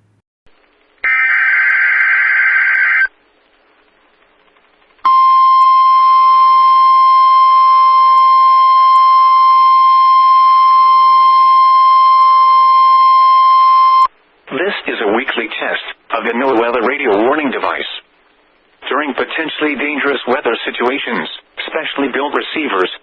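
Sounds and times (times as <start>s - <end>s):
harsh warbling data screech: 1.0s - 3.1s
steady alarm tone: 5.0s - 14.1s.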